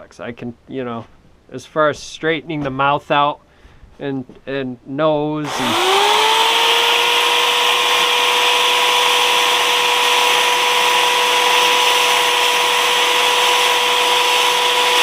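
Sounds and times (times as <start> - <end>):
electric power-carving tool whining: 5.4 - 15.0.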